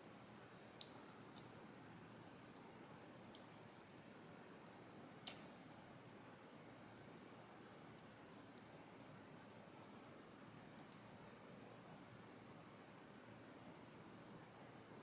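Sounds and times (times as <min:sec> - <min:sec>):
faint sharp clicks of lock parts: 0:00.6 - 0:01.6, 0:05.2 - 0:05.6, 0:10.7 - 0:11.1, 0:12.1 - 0:13.8.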